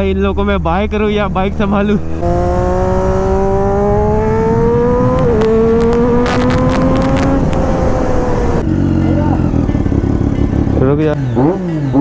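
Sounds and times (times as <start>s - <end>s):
motorcycle engine accelerating: 0.0s - 12.0s.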